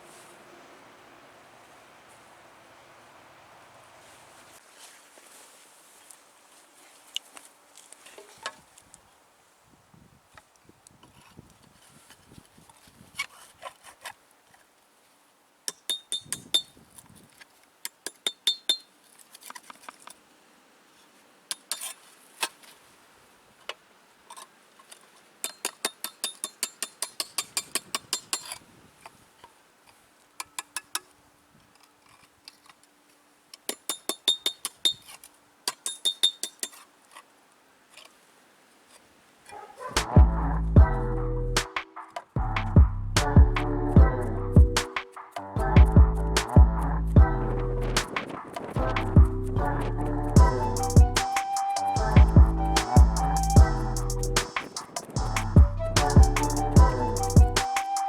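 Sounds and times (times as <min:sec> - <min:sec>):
music: 0:40.0 - 0:48.2, 0:48.8 - 0:58.0.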